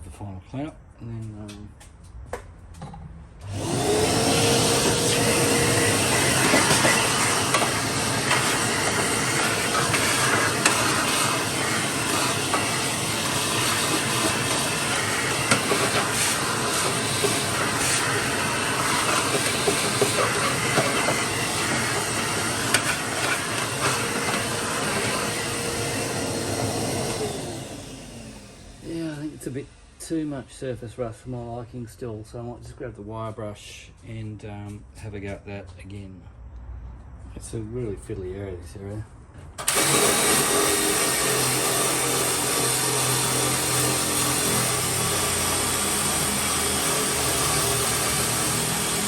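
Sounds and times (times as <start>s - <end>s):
wire wheel scrubbing metal: 4.8s - 25.6s.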